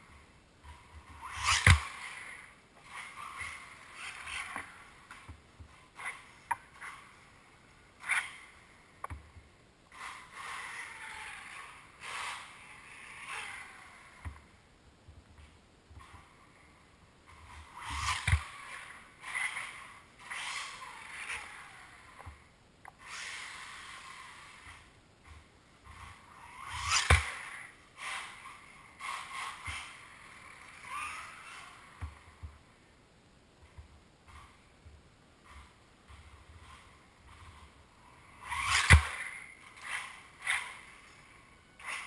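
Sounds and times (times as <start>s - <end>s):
radio-controlled buggy motor: 0.1s - 7.4s, 8.0s - 9.1s, 9.9s - 14.5s, 17.3s - 32.5s, 35.4s - 42.0s.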